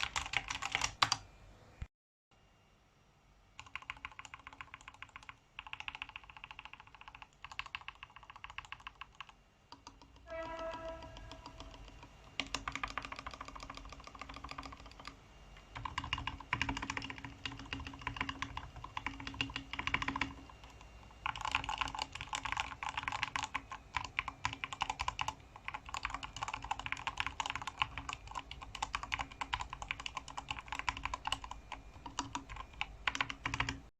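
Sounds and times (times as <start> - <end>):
mechanical keyboard typing: 0.0 - 1.2, 3.6 - 33.9
brief pitched tone: 10.3 - 11.8.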